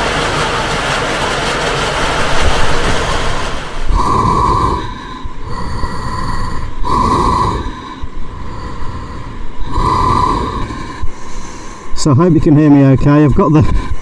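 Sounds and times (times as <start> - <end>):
heavy farm machinery running: 0.0 - 4.2.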